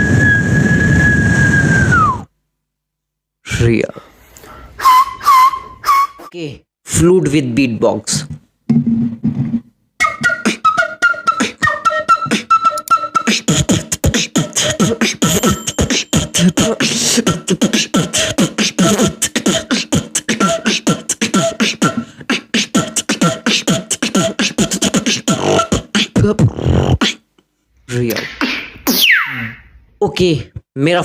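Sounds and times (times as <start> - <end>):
beatboxed flute-like melody: 0.0 - 2.3, 4.8 - 6.4, 10.0 - 27.3, 28.1 - 29.7
beatbox rhythm: 10.0 - 27.4, 28.1 - 29.5.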